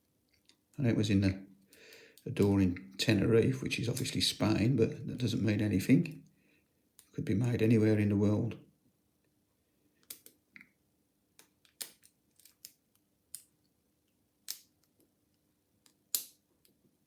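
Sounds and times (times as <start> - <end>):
lock pick clicking pins: 10.0 - 10.4, 11.4 - 13.5, 14.4 - 15.1, 15.8 - 16.8.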